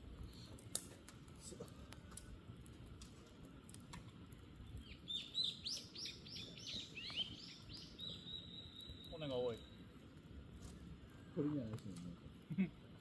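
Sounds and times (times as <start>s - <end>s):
bird chirping: 4.7s - 9.8s.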